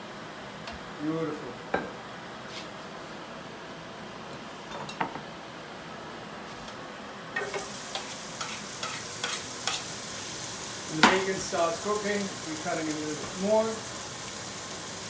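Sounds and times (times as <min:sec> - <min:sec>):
background hiss: 0:07.4 - 0:15.0
bacon sizzling and crackling: 0:07.4 - 0:15.0.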